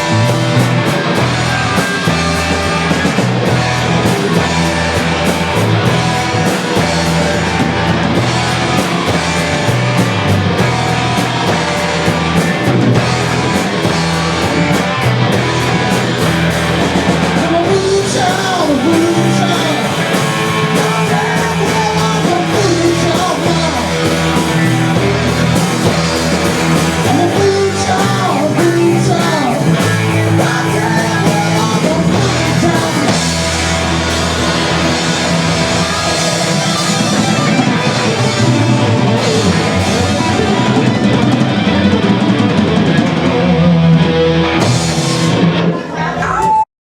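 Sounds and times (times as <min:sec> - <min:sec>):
drum kit: 0:00.0 - 0:46.6
electric guitar: 0:00.0 - 0:46.6
person singing: 0:17.2 - 0:26.0, 0:26.9 - 0:33.8.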